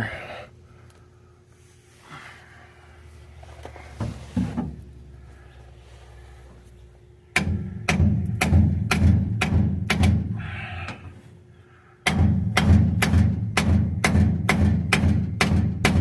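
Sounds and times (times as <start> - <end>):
hammer striking metal: 7.3 - 10.3, 12.0 - 16.0.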